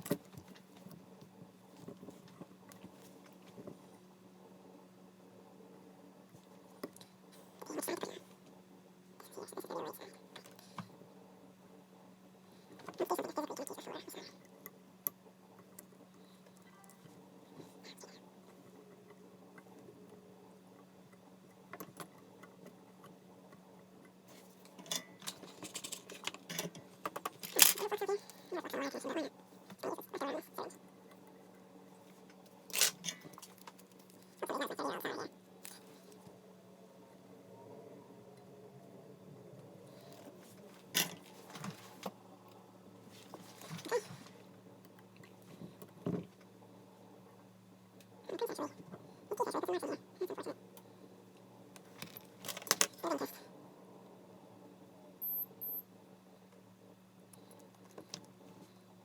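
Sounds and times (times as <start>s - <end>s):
faint steady hum: 0.0s - 59.0s
small hard parts clicking and rattling: 24.6s - 28.4s.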